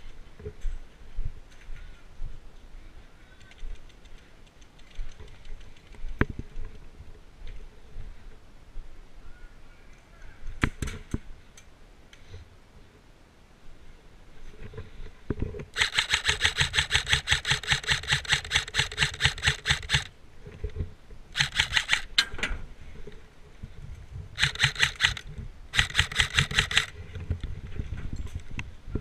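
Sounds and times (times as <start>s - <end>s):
airsoft rifle automatic bursts: 15.8s - 20.1s, 21.4s - 22.2s, 24.4s - 26.9s.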